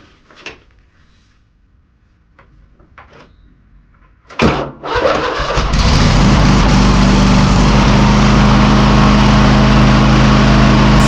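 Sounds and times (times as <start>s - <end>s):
mower engine starting and running: 4.8s - 11.0s.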